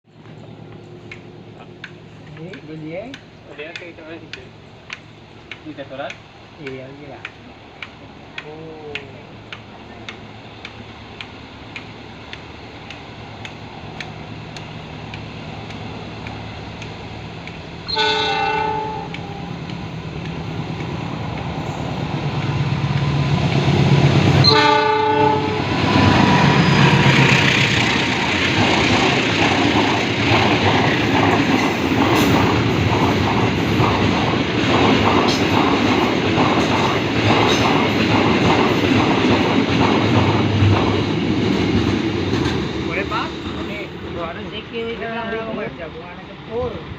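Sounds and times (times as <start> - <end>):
locomotive rumble: 0.1 - 46.9
train horn blast: 17.8 - 19.6, 24.4 - 27.3.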